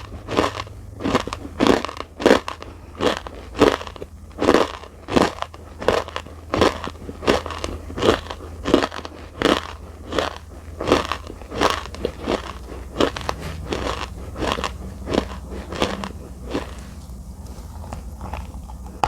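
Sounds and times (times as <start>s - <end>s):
crunchy chewing: 0.0s - 19.0s.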